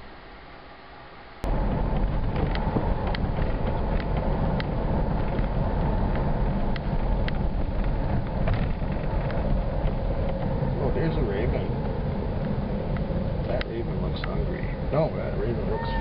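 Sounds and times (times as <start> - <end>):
faint steady hum: 0.0 - 16.0
road and wind rumble: 0.0 - 16.0
light ticks: 6.1 - 10.5, 12.4 - 14.4.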